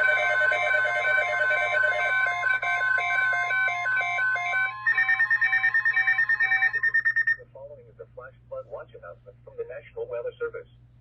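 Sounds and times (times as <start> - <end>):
electronic alert tones: 0.0 - 7.4.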